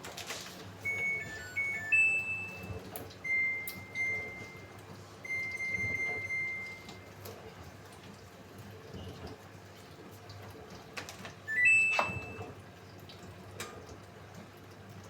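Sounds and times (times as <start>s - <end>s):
long steady beeps: 0.8s - 7.1s, 11.5s - 12.4s
short electronic beeps: 0.9s - 4.7s, 5.3s - 7.1s, 11.5s - 12.4s.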